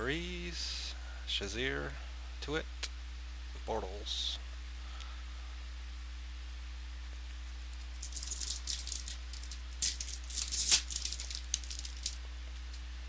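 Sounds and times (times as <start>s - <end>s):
low electrical hum: 0.0s - 13.0s
foil wrapper crinkling and tearing: 7.7s - 12.3s.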